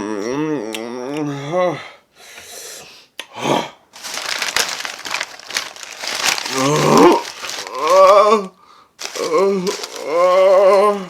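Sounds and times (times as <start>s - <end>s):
food crinkling and crackling: 4.0s - 11.0s
short voiced moan: 6.5s - 8.5s.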